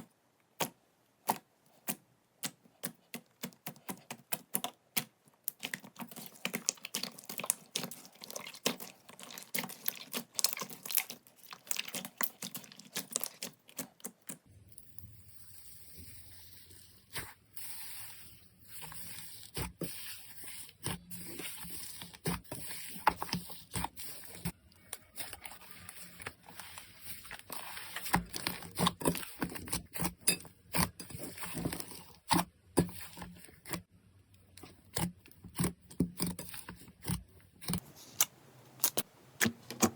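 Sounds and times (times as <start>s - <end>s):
slime clicking and squishing: 0.0s - 14.5s.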